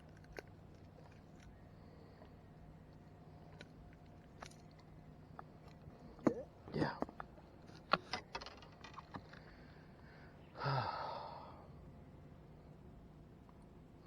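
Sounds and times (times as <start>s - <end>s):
person sighing: 10.6s - 11.6s.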